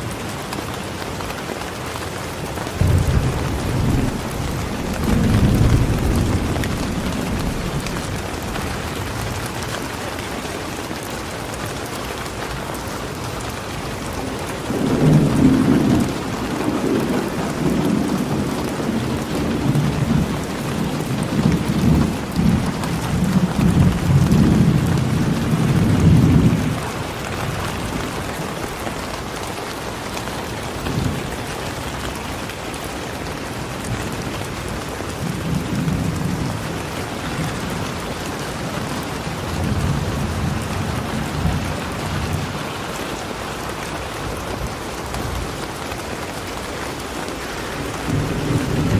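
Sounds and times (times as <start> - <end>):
steady rain: 0.0 - 48.9
thunder rumbling: 2.7 - 9.8, 14.1 - 28.8, 47.6 - 48.9.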